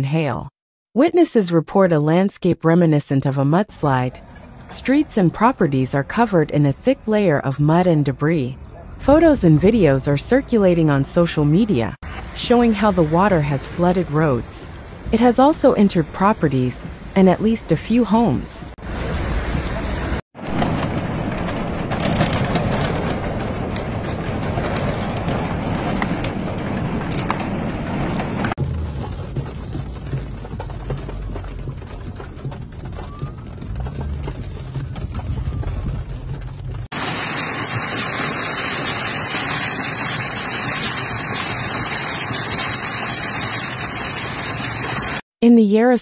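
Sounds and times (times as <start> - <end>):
low rumble: 19.1 - 41.7
heavy rain rushing: 20.0 - 30.0, 36.9 - 45.2
heavy rain: 36.9 - 45.2.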